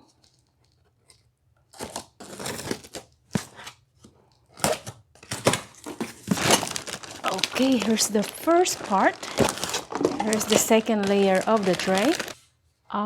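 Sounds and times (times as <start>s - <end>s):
packaging rustling and crinkling: 4.6s - 12.4s.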